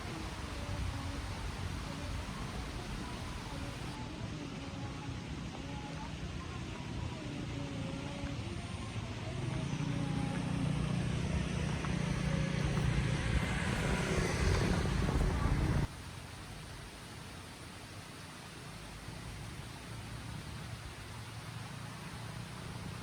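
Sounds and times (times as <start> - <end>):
steady hiss: 0.0 - 8.5, 12.0 - 23.0
vehicle engine approaching: 9.4 - 15.9.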